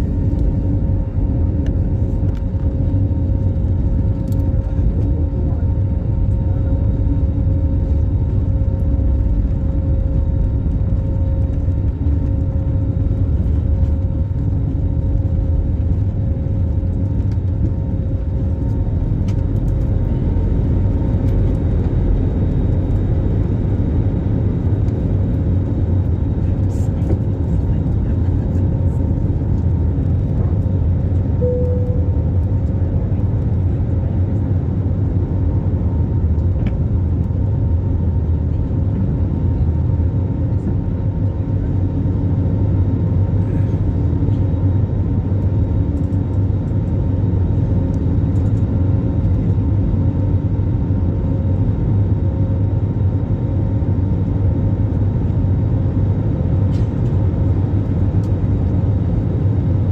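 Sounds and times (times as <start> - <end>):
airliner engine and airflow drone: 0.0 - 59.9
faint tone: 31.4 - 32.5.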